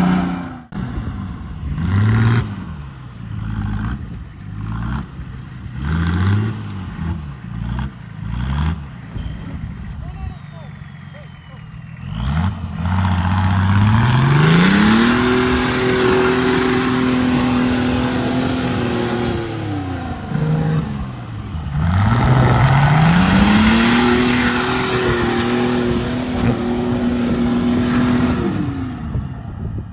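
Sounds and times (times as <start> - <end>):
diesel engine revving: 0.0 - 29.9.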